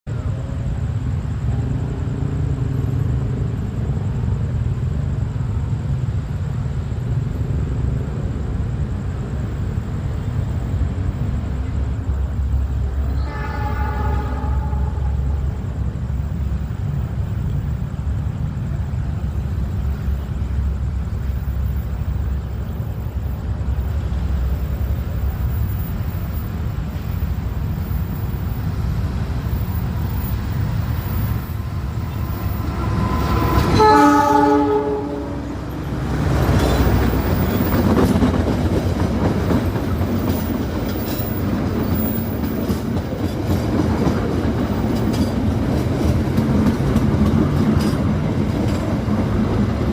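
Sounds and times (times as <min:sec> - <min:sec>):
diesel train engine rumble: 0:00.0 - 0:49.9
train rolling and rattling: 0:00.1 - 0:49.9
locomotive horn: 0:13.0 - 0:15.5, 0:32.3 - 0:36.0.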